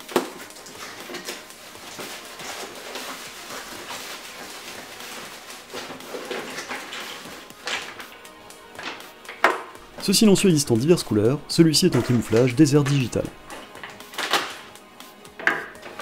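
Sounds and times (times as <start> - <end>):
handling rustle: 0.0 - 8.2
objects clicking and knocking: 0.0 - 9.8, 11.9 - 16.0.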